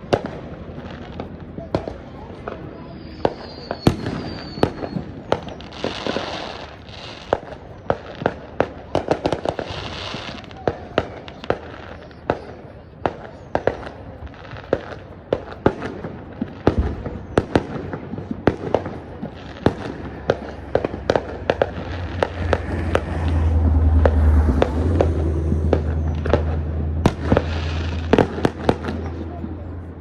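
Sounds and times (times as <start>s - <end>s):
firework bangs: 0.0s - 30.0s
low rumble: 16.2s - 30.0s.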